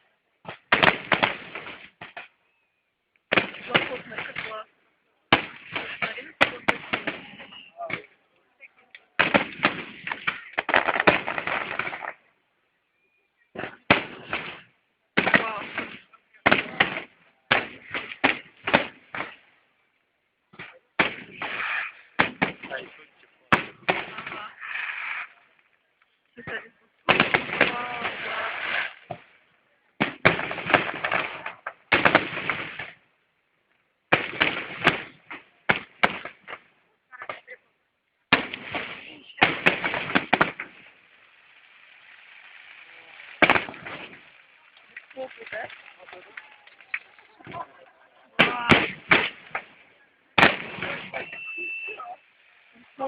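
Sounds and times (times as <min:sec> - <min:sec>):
fireworks bangs and crackles: 0:00.4 - 0:02.2, 0:03.3 - 0:04.6, 0:05.3 - 0:08.1, 0:09.2 - 0:12.3, 0:13.5 - 0:19.5, 0:20.6 - 0:24.8, 0:26.4 - 0:29.4, 0:30.0 - 0:33.0, 0:34.1 - 0:36.7, 0:38.3 - 0:51.4.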